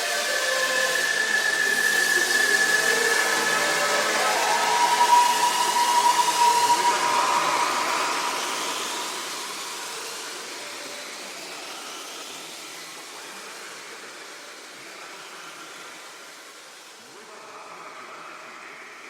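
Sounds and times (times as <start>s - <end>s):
steady radio whistle: 0.0s - 11.0s
shortwave radio static hiss: 0.0s - 19.0s.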